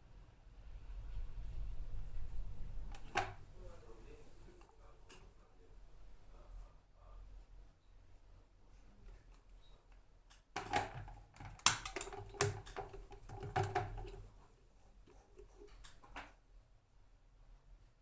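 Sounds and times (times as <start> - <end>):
electric kettle clicks and knocks: 2.9 - 3.4, 10.6 - 14.3.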